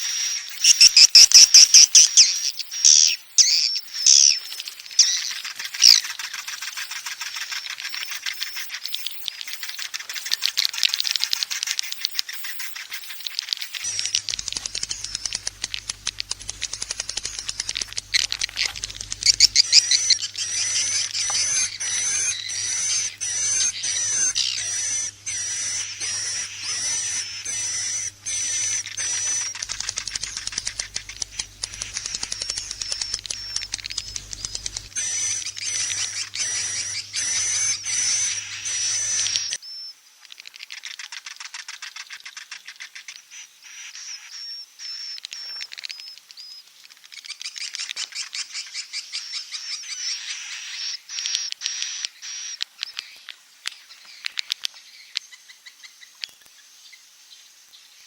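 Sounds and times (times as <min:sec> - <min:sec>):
swiftlets twittering: 0:00.0 - 0:39.6.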